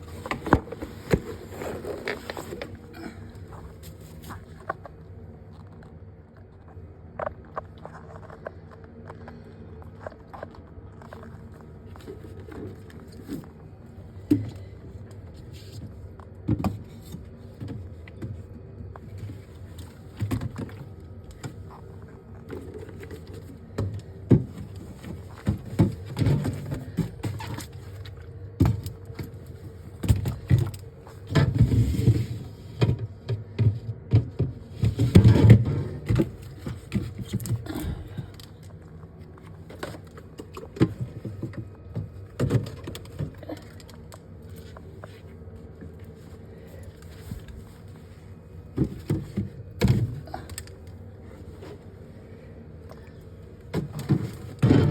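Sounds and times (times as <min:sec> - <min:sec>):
rubbing and rustling: 0:00.0 - 0:04.8
objects knocking and clattering: 0:53.7 - 0:54.9.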